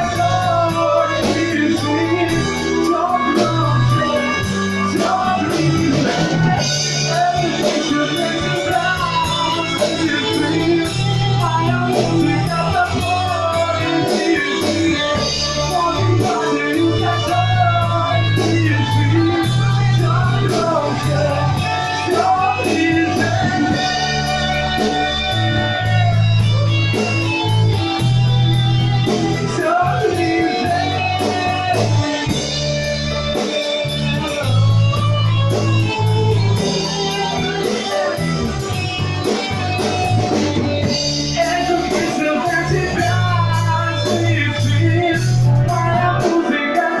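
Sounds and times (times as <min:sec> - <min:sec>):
band playing a song: 0:00.0 - 0:47.0.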